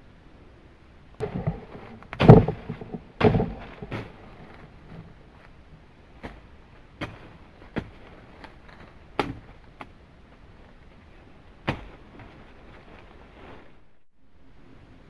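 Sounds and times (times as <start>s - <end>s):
faint steady hiss: 0.0s - 15.0s
sharp knocks: 1.2s - 4.4s.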